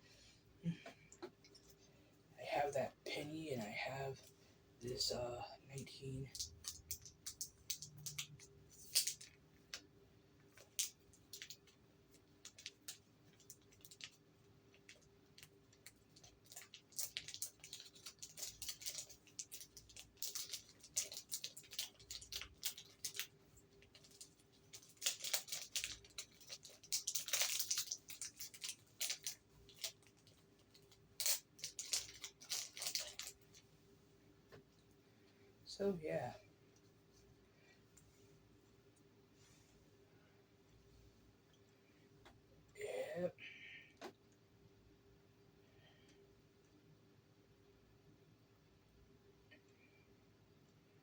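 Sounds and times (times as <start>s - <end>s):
packaging crinkling and rustling: 6.3s - 9.9s, 10.5s - 33.6s.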